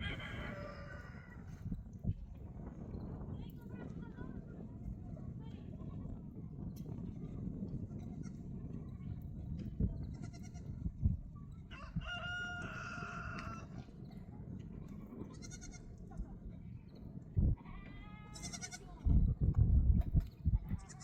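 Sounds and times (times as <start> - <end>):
rooster crowing: 0.0 - 1.4, 11.7 - 13.7
goat bleating: 15.3 - 15.9, 17.6 - 18.9, 20.7 - 21.0.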